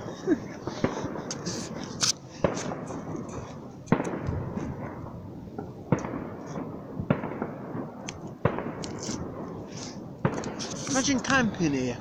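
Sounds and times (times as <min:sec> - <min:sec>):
background noise: 0:00.0 - 0:12.0
fireworks bangs: 0:00.0 - 0:12.0
small firework pops: 0:00.7 - 0:04.7, 0:05.6 - 0:11.0.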